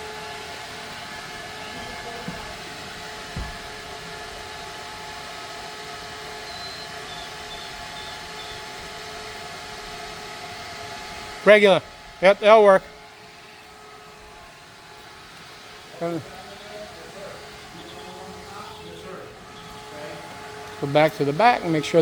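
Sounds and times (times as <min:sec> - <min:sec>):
machinery drone with whining tones: 0:00.0 - 0:22.0
low thumps: 0:02.2 - 0:04.0.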